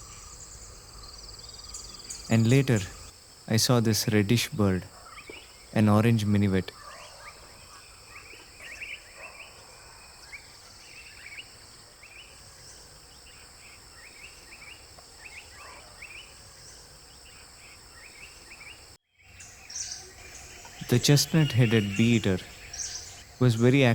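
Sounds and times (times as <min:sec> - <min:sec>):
rising bird chirps: 0:00.0 - 0:03.1, 0:17.3 - 0:23.9
insects trilling: 0:00.0 - 0:23.9.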